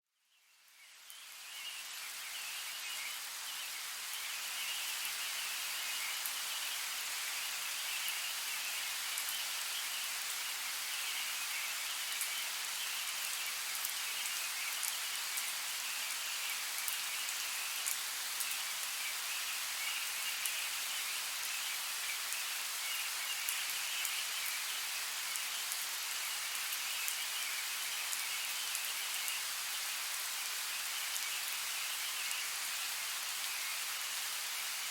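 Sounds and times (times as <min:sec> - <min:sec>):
rain pattering in forest: 0:00.3 - 0:34.9.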